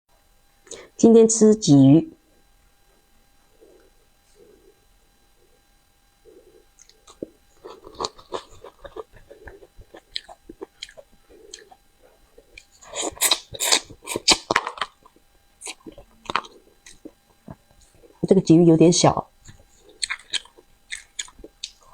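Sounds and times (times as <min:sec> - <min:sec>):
crunchy chewing: 0:02.2 - 0:18.2, 0:19.2 - 0:21.9
wet mouth smacks and chewing: 0:06.7 - 0:18.2, 0:19.4 - 0:21.9.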